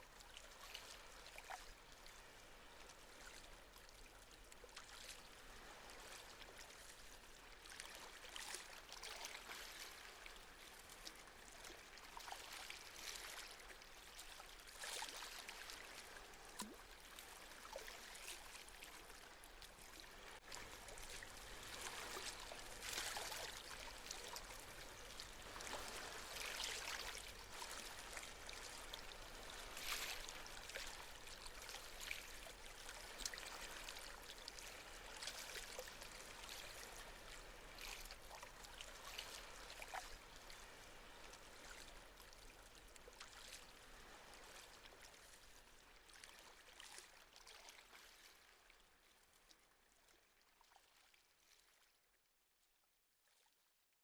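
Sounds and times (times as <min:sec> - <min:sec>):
gentle sea waves washing in: 0:04.2 - 0:45.5.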